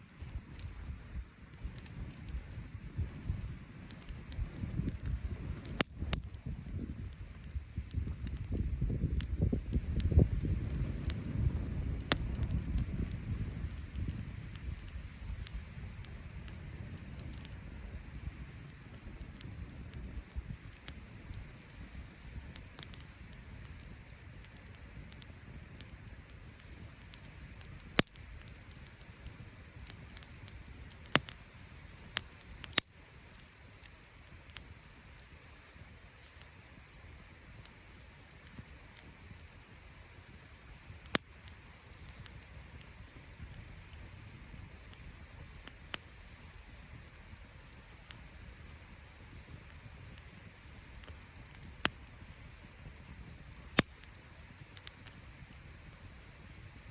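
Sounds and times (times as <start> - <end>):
campfire crackling: 0.0 - 56.9.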